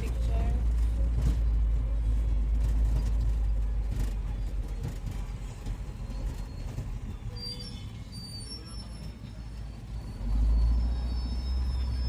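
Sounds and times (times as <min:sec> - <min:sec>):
vehicle rumble and road noise: 0:00.0 - 0:12.0.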